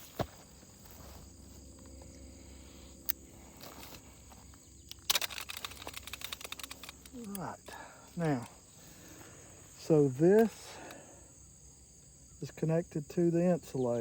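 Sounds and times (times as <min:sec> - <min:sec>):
insects chirping: 0:00.0 - 0:14.0
fence wire clicking and rattling: 0:04.8 - 0:08.5.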